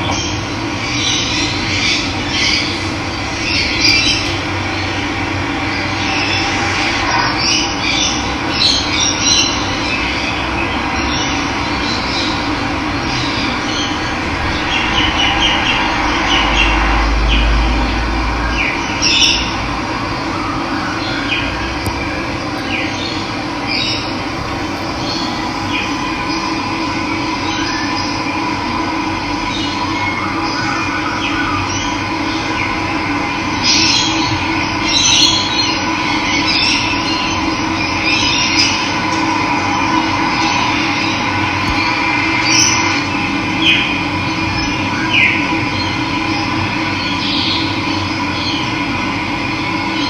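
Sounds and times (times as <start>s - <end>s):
low rumble: 9.6s - 29.8s
birds chirping: 21.0s - 28.3s.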